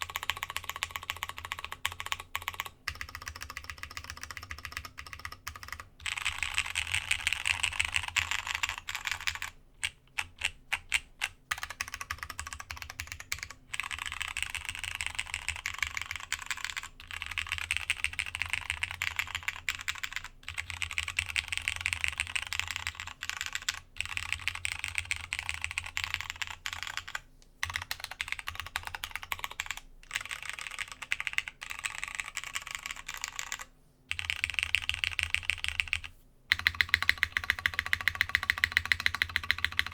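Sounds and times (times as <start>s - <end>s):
mechanical keyboard typing: 0.0s - 39.9s.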